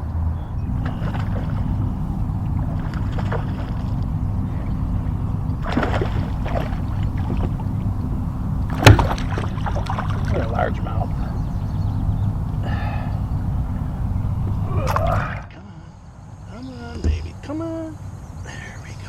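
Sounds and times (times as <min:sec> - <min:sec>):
water lapping against kayak: 0:00.0 - 0:15.5
steady low rumble: 0:00.0 - 0:19.0
knocks on kayak: 0:08.7 - 0:10.3, 0:16.9 - 0:17.3.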